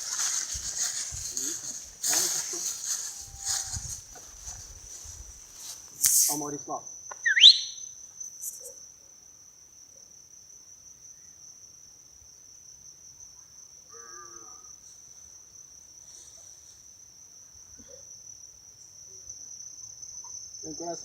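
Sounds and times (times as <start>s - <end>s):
insect trilling: 0.0s - 8.9s.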